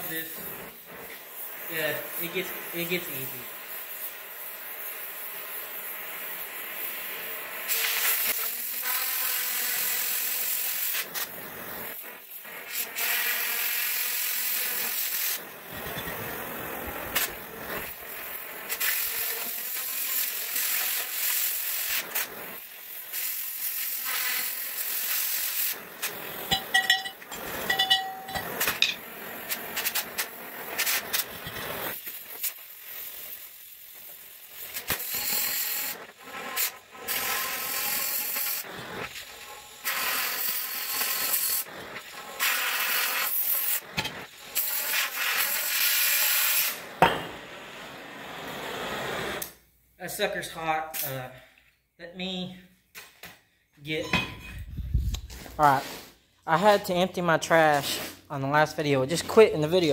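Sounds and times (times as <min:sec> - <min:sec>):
plasma cutter hissing: 0:00.0 - 0:49.6
crackling pops: 0:15.1 - 0:24.1, 0:28.3 - 0:33.1, 0:33.9 - 0:37.4.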